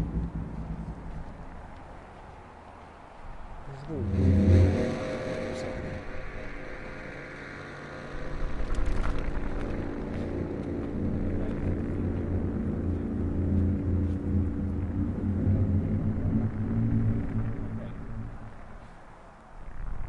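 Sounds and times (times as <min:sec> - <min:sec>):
loud multi-tone drone: 0:00.0 - 0:01.8, 0:03.7 - 0:20.0
deep rumble: 0:00.0 - 0:02.2, 0:03.4 - 0:20.0.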